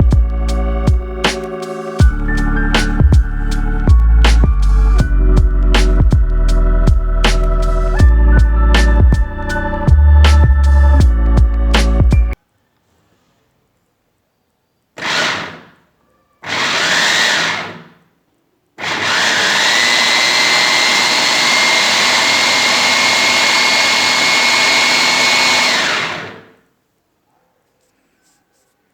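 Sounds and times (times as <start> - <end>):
food chopper motor whining: 15.0 - 15.7, 16.4 - 18.0, 18.8 - 26.6.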